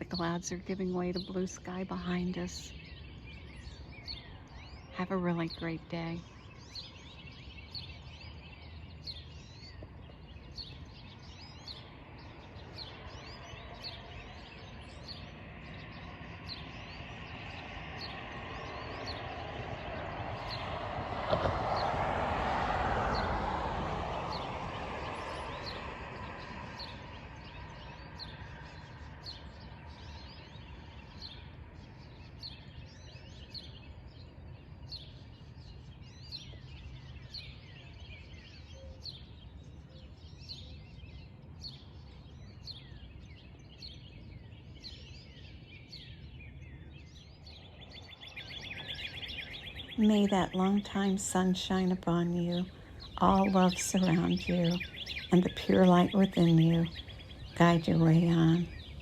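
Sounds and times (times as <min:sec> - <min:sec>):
songbirds chirping: 0:00.0 - 0:59.0
car passing: 0:01.1 - 0:32.7, 0:47.0 - 0:59.0.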